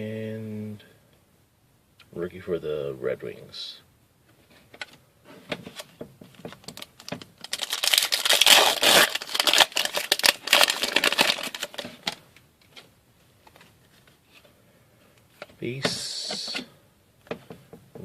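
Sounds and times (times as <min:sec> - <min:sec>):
wrapper crinkling and tearing: 0:06.6 - 0:12.2.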